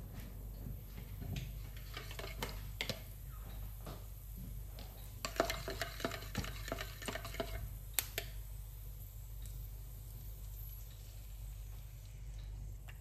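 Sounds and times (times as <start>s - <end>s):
utensil stirring in a pot: 0.9s - 13.0s
utensil clinking against cookware: 5.2s - 8.3s.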